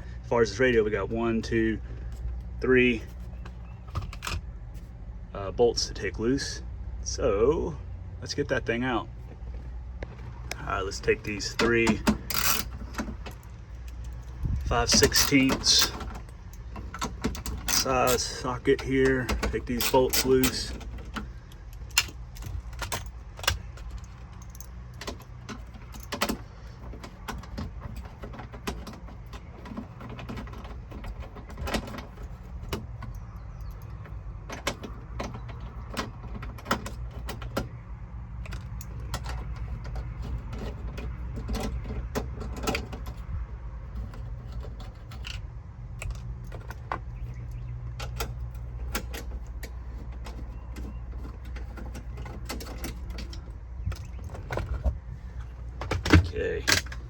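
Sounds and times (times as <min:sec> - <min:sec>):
steady low hum: 0:00.0 - 0:57.0
socket wrench clicking: 0:11.6 - 0:18.3.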